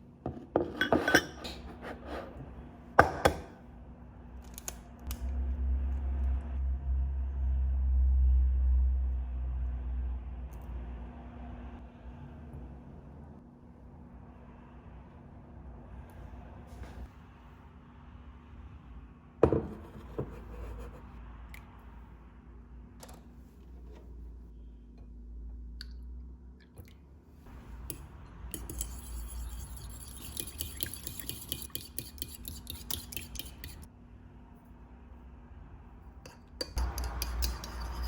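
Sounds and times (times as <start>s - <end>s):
metal clinking and scraping on dish: 0.6s - 2.4s, 36.8s - 38.0s
dish set down knock: 19.4s - 20.3s.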